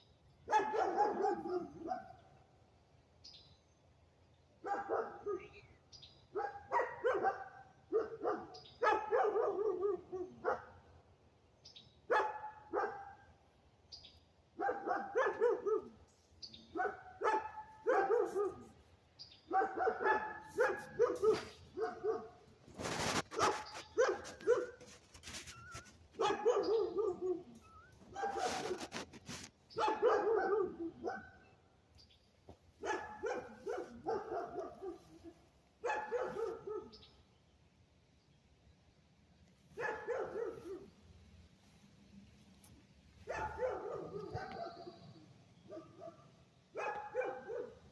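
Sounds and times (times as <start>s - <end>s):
brief rustle: 22.6s - 26.3s, 27.6s - 29.8s.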